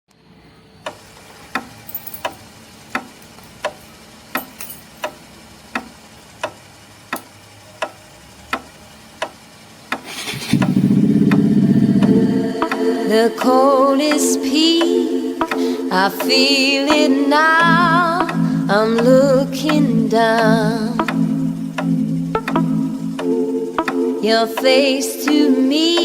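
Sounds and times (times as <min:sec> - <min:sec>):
motorcycle engine idling: 0:00.6 - 0:12.5, 0:17.6 - 0:23.9
turn signal ticking: 0:00.8 - 0:12.8, 0:13.4 - 0:24.7
loud low sound: 0:10.0 - 0:12.7, 0:17.6 - 0:23.2.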